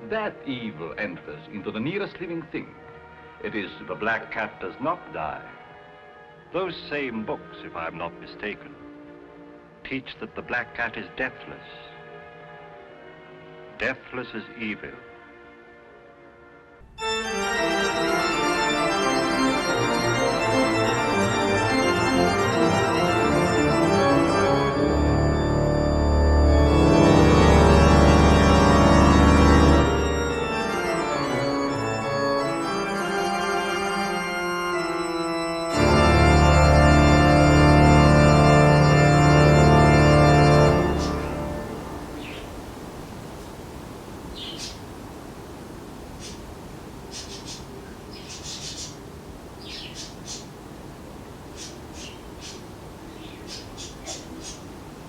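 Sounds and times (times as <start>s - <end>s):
organ playing minor chords: 16.9s - 44.6s.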